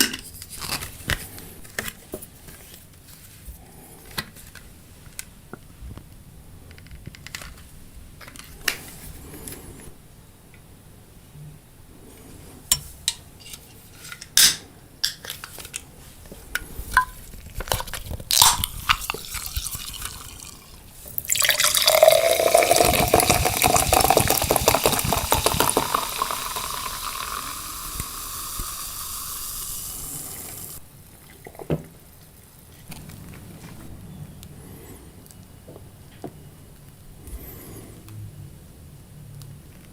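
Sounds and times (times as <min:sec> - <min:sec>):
drink pouring into a glass: 0:18.3 - 0:31.7.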